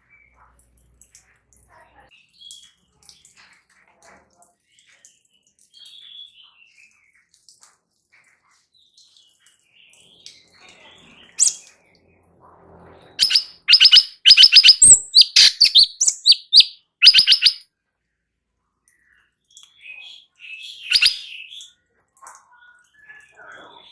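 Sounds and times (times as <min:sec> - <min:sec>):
bird singing sharp high chirps: 0:11.4 - 0:11.6, 0:13.2 - 0:17.6, 0:19.9 - 0:21.6.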